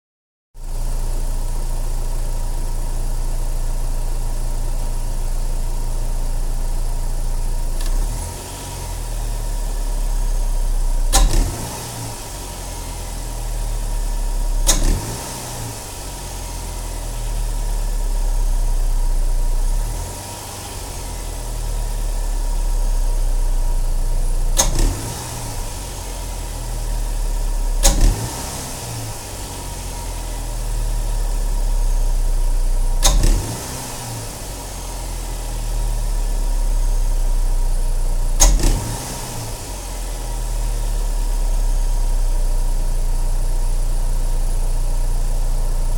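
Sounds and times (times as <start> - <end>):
car engine idling and revving: 0.6 - 45.9
sharp brief click: 11.2 - 11.7, 14.7 - 15.4, 24.6 - 25.0, 27.8 - 28.3, 33.0 - 33.6, 38.4 - 39.1.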